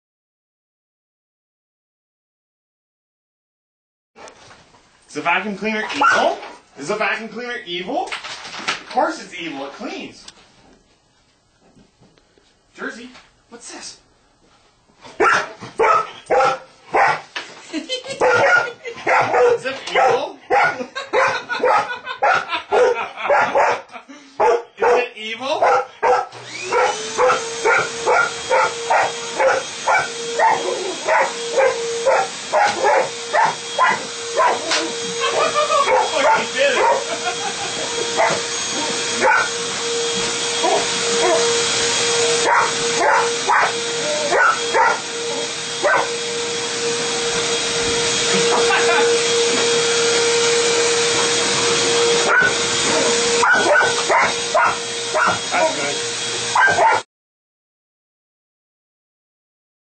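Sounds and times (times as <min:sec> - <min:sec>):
dog barking: 0:06.0 - 0:06.3, 0:15.2 - 0:17.2, 0:18.2 - 0:34.8, 0:35.9 - 0:37.1, 0:38.2 - 0:38.4, 0:39.2 - 0:39.5, 0:40.6 - 0:41.4, 0:42.4 - 0:45.0, 0:45.8 - 0:46.1, 0:52.2 - 0:55.8, 0:56.5 - 0:57.0
vacuum cleaner hum: 0:15.0 - 0:57.0.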